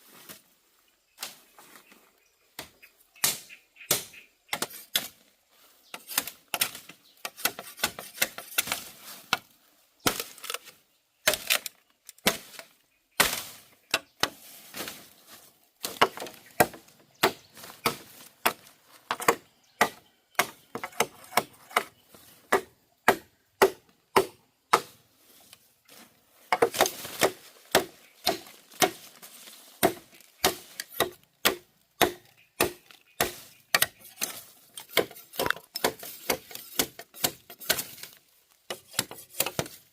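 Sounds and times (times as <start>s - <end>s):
bamboo being chopped: 2.6s - 5.2s, 5.9s - 25.6s, 26.5s - 39.9s.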